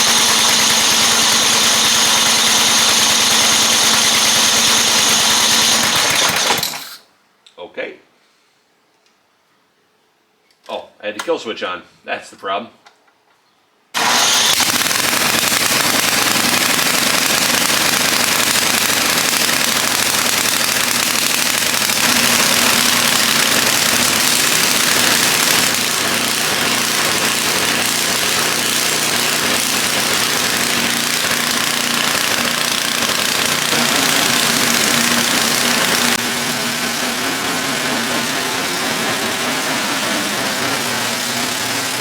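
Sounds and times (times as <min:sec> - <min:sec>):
snowblower engine running: 0:00.0 - 0:07.0, 0:14.0 - 0:42.0.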